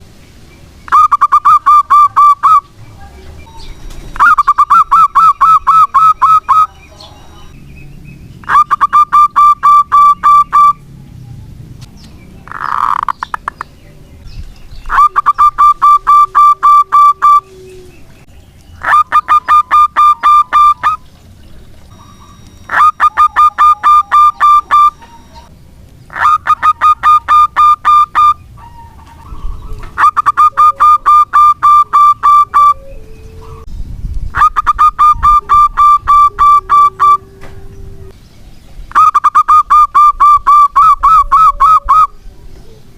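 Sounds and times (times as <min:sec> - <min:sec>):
dove cooing: 0:08.4 - 0:10.8, 0:14.8 - 0:18.2, 0:18.8 - 0:25.5, 0:26.1 - 0:33.7, 0:34.4 - 0:38.2, 0:38.9 - 0:42.9.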